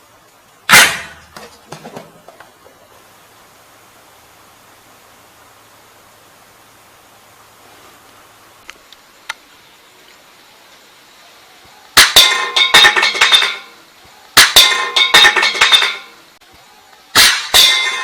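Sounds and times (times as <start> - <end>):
faint clicks: 8.0 - 10.2.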